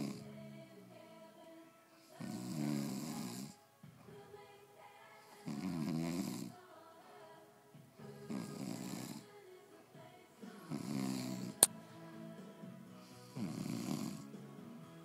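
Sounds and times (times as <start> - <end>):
man snoring: 0.0 - 0.2, 2.2 - 3.6, 5.4 - 6.5, 8.3 - 9.3, 10.7 - 11.6, 13.2 - 14.3.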